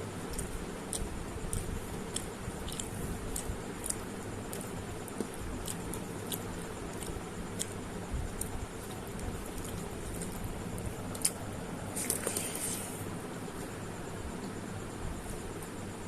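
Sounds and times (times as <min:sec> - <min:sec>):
steady low hum: 0:00.0 - 0:16.0
person chewing food: 0:00.2 - 0:12.9.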